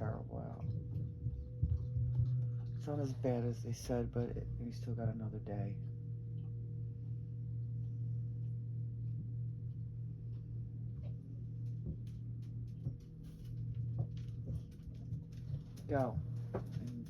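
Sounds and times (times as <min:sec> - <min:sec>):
low hum: 0:00.0 - 0:17.0
faint clicks and ticks: 0:11.0 - 0:17.0.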